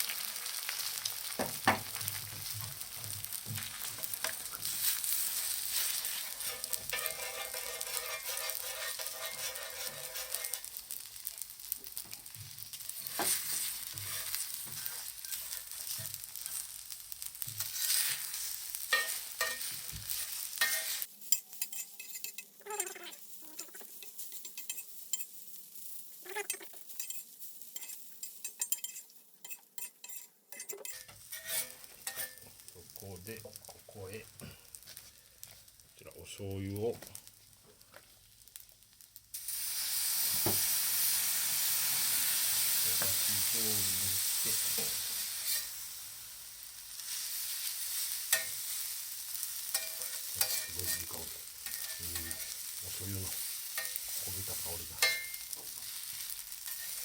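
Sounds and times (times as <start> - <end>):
rice sizzling on griddle: 0.0 - 57.0
spatula scraping metal plate: 5.8 - 10.6, 19.0 - 21.0, 28.6 - 32.4.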